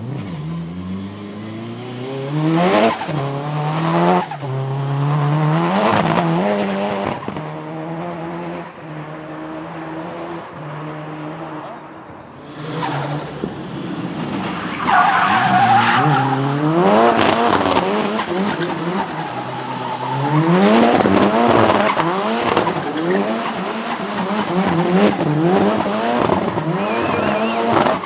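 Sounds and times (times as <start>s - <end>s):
turbocharged engine revving hard: 0.0s - 11.8s, 12.4s - 28.0s
tyres squealing and skidding: 11.2s - 24.8s, 26.2s - 28.0s.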